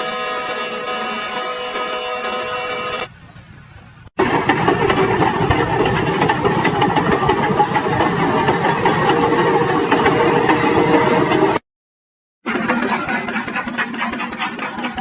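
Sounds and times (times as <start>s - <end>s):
engine running: 2.4s - 8.7s.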